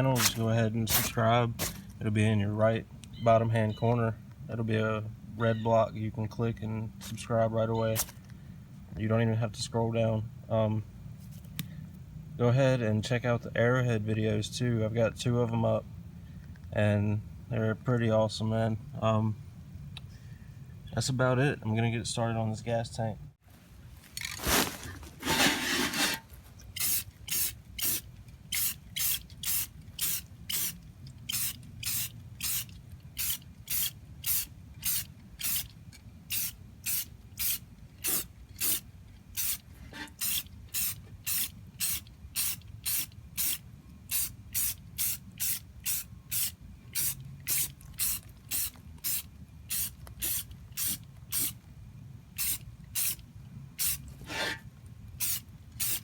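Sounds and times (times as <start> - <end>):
spray paint can bursts: 0.0 - 1.8, 26.8 - 35.7, 36.3 - 38.8, 39.4 - 51.6, 52.4 - 53.2, 53.8 - 54.6, 55.2 - 56.0.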